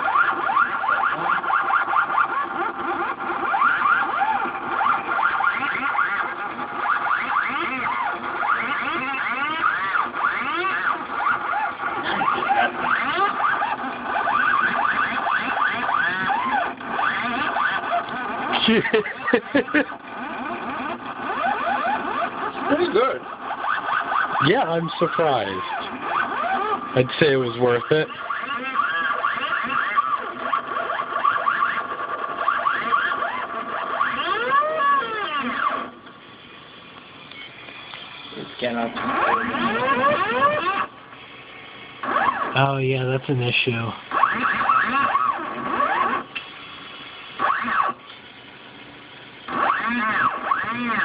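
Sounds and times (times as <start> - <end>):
stepper motors whining: 0.0 - 51.0.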